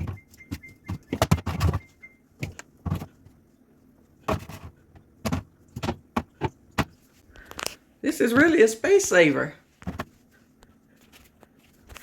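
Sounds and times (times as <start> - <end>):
containers knocking on fridge shelves: 0.0 - 3.3, 4.2 - 7.0.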